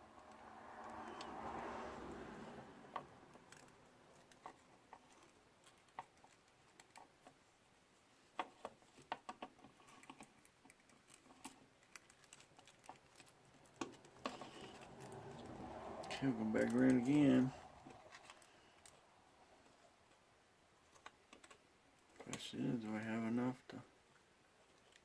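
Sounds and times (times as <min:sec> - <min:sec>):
soft rustle: 0:00.1 - 0:23.3
plastic parts clicking: 0:08.3 - 0:15.5.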